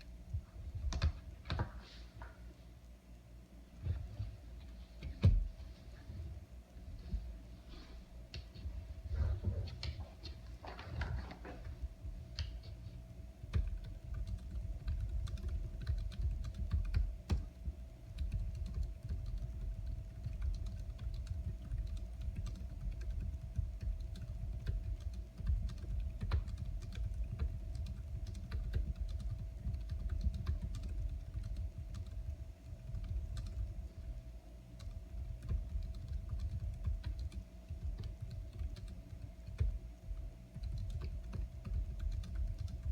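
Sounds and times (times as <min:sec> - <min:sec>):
fast typing on keyboard: 0:13.4 - 0:42.9.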